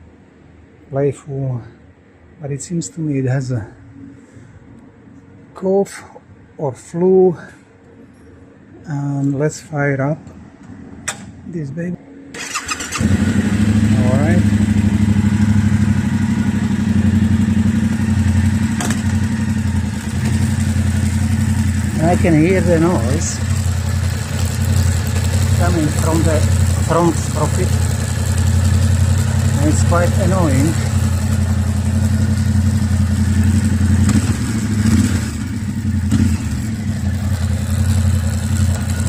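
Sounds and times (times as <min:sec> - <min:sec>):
motorcycle engine idling: 0:12.6 - 0:39.0.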